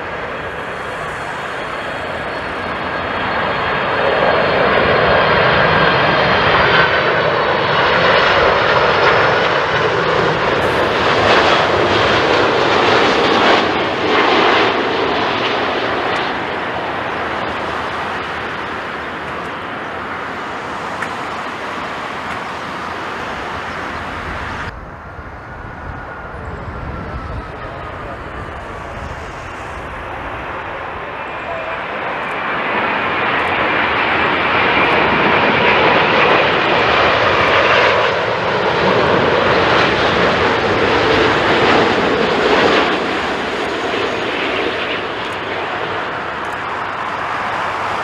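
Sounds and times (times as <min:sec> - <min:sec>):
faint high whine: 0:00.0 - 0:06.2, 0:10.6 - 0:35.2
jet engines passing: 0:00.0 - 0:48.0.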